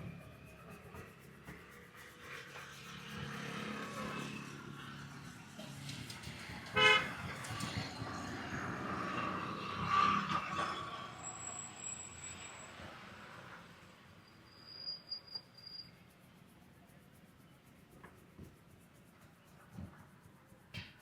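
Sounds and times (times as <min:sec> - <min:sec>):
vehicle passing: 0:00.0 - 0:14.2.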